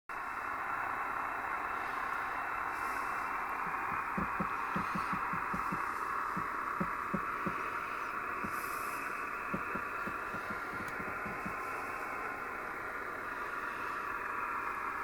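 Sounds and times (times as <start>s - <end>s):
radio receiver hiss: 0.1s - 15.0s
low interference thuds: 3.7s - 7.6s, 9.5s - 11.6s.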